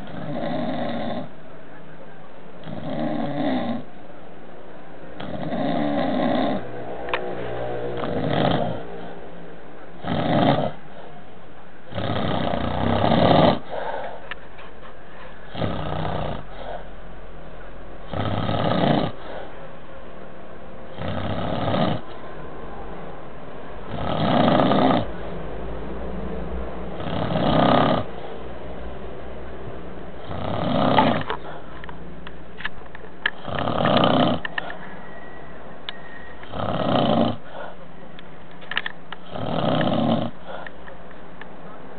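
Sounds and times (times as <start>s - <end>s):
person snoring: 8.0s - 8.8s, 33.4s - 34.4s, 36.5s - 37.4s, 39.3s - 40.4s.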